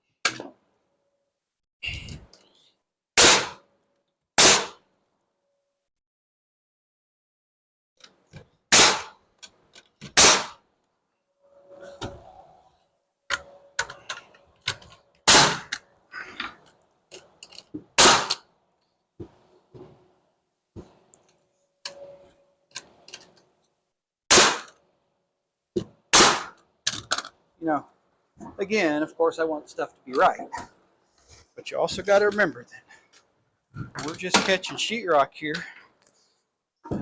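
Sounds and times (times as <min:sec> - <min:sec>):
nail gun shots into wood: 0:03.2 - 0:03.6, 0:04.4 - 0:04.8, 0:08.7 - 0:09.2, 0:10.0 - 0:10.6, 0:15.2 - 0:15.8, 0:18.0 - 0:18.4, 0:24.3 - 0:24.8, 0:26.1 - 0:26.6
knocks and handling noises: 0:13.3 - 0:18.0, 0:19.2 - 0:23.6.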